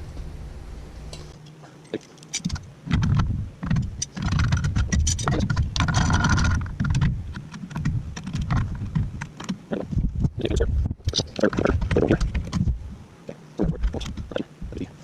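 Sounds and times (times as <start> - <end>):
metal parts scraping and rattling: 1.4 - 12.8
metal clicks and knocks: 1.9 - 9.6
low handling rumble: 2.5 - 15.0.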